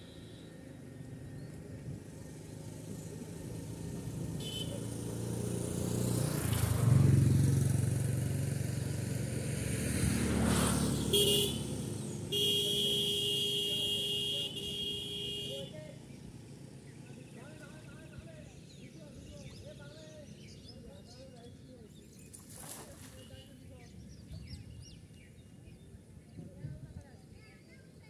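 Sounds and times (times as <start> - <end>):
vehicle horn: 0.0 - 0.6, 4.3 - 5.0, 10.9 - 15.8
vehicle passing close: 2.0 - 13.3.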